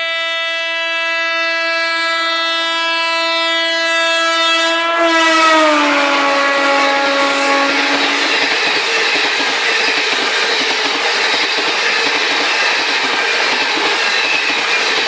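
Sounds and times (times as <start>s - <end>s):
train horn: 0.0s - 8.8s
passing train rushing: 5.0s - 15.0s.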